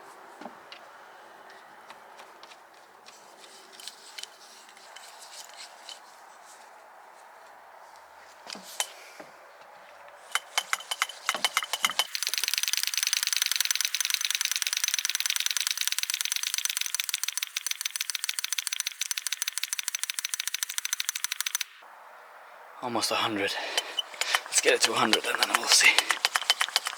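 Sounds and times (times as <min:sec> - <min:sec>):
rapid hand pump strokes: 0:10.3 - 0:21.7, 0:23.2 - 0:26.9
pump fitting clicks: 0:10.4 - 0:21.6, 0:23.8 - 0:26.9.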